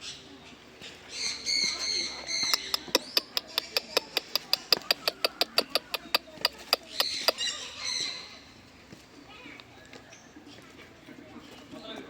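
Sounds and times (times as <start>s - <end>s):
bird squawking: 1.1s - 8.4s
rapid sharp taps: 2.5s - 7.4s.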